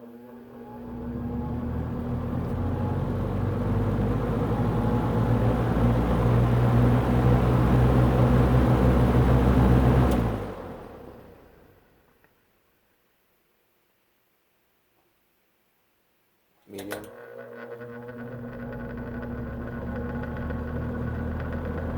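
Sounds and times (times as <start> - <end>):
box fan motor hum and air: 0.1 - 11.7, 17.9 - 21.9.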